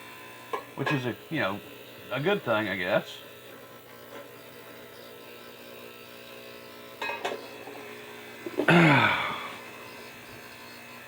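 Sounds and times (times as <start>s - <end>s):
ultrasonic cleaner buzzing: 0.0s - 11.0s
man speaking: 0.8s - 3.1s.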